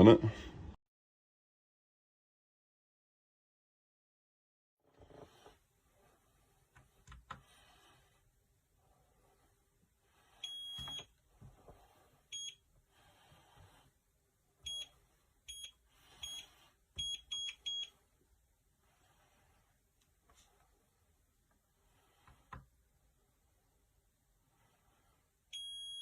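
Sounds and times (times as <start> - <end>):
electronic keypad beeps: 10.4 - 11.1, 14.7 - 14.9, 15.5 - 17.9, 25.6 - 26.0.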